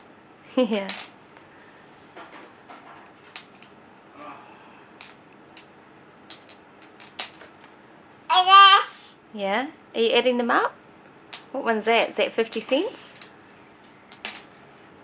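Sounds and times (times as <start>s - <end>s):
coins clinking: 0.7s - 1.2s, 5.0s - 7.5s, 14.1s - 14.5s.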